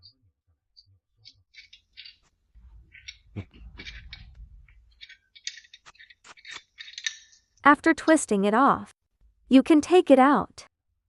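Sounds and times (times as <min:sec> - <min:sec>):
low rumble: 0:02.6 - 0:05.0
wrenches clicking on metal: 0:04.9 - 0:07.4.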